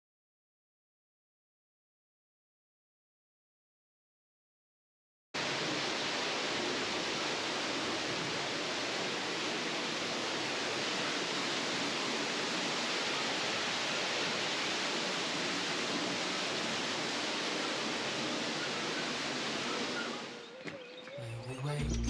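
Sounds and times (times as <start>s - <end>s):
small waterfall rushing: 5.4s - 21.0s.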